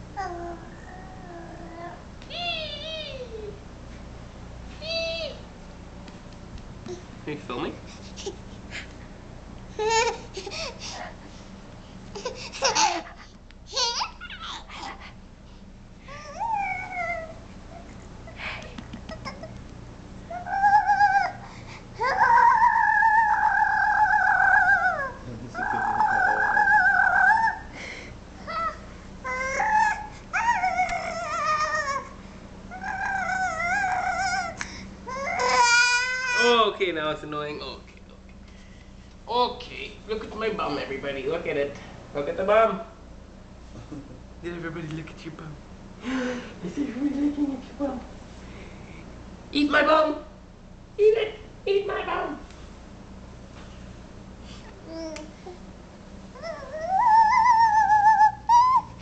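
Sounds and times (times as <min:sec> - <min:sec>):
child squealing and babbling: 0:00.2 - 0:03.6, 0:16.1 - 0:17.4, 0:20.3 - 0:21.4, 0:22.0 - 0:27.7, 0:28.4 - 0:36.5, 0:56.4 - 0:59.0.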